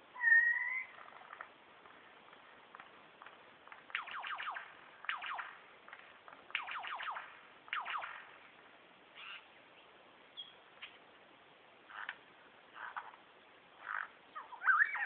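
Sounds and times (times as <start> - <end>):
lyrebird calling: 0.1 - 1.6, 9.2 - 9.5, 13.8 - 15.0.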